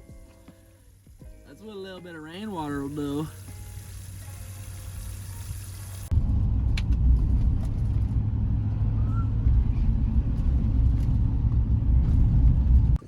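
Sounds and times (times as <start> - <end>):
vehicle road and engine rumble: 2.7 - 13.0.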